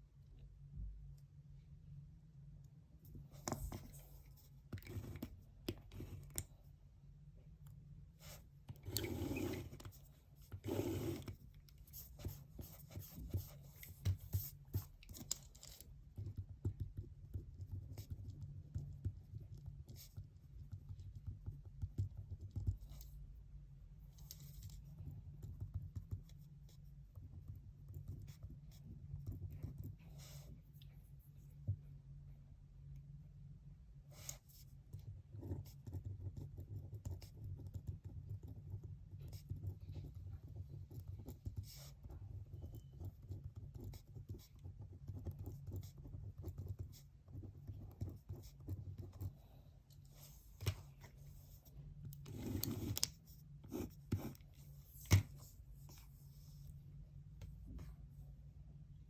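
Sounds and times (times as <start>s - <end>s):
pen writing on paper: 8.2s - 23.1s, 35.4s - 49.4s, 52.2s - 56.2s.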